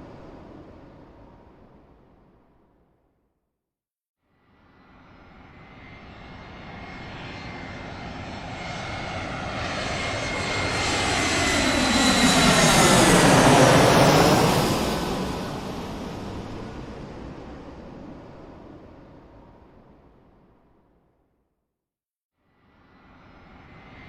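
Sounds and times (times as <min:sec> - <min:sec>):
airplane flying over: 0:00.0 - 0:02.2, 0:04.7 - 0:20.3, 0:22.7 - 0:24.0.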